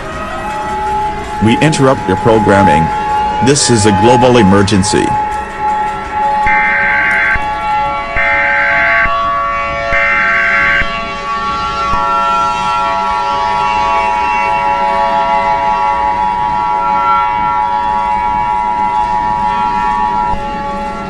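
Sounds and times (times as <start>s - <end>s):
harsh digital data bursts: 0.6s - 5.4s.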